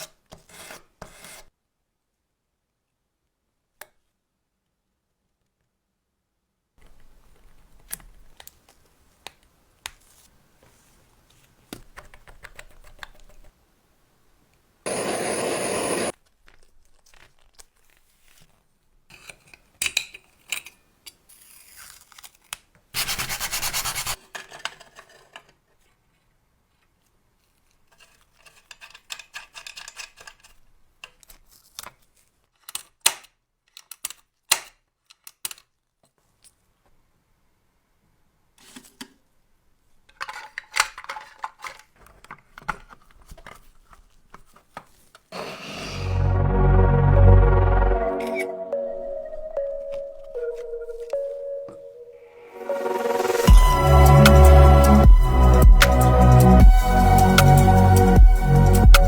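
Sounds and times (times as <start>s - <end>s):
loud hissing bursts: 14.9s - 16.1s.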